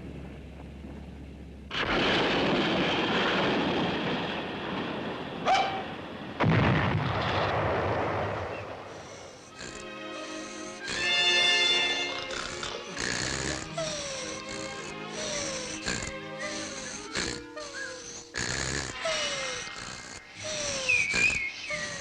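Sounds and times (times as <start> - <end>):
music: 9.5 - 18.4.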